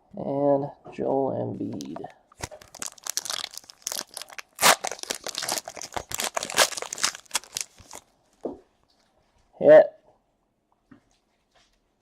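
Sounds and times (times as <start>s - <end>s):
foil wrapper tearing and crinkling: 1.8s - 8.1s.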